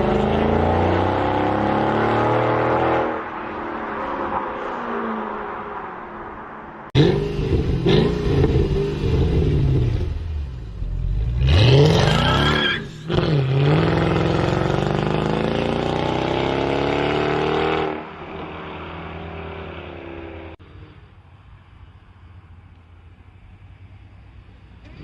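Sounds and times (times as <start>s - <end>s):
car engine revving and accelerating: 0.0s - 3.3s, 6.9s - 20.6s.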